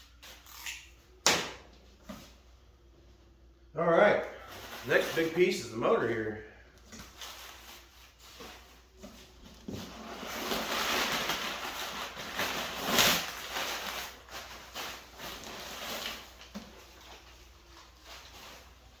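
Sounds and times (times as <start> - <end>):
packing material rustling: 6.8 - 19.0.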